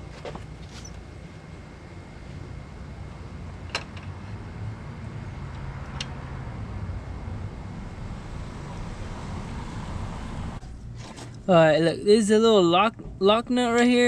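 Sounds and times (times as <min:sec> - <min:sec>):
low background rumble: 0:00.0 - 0:14.0.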